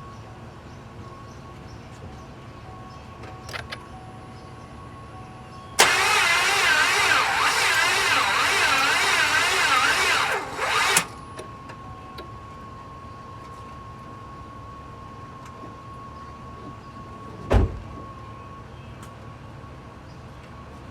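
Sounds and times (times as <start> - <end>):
starter motor cranking engine: 5.8 - 11.2.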